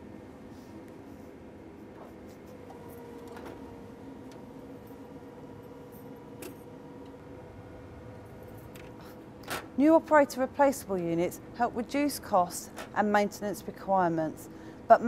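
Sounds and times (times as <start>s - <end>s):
printing machine humming: 2.0s - 9.5s.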